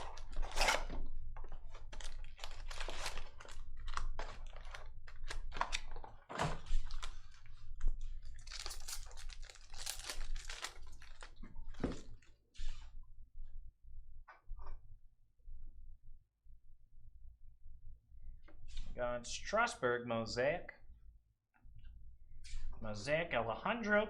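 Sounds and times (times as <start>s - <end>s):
foil wrappers crinkling and tearing: 0.0s - 0.6s, 1.5s - 11.8s.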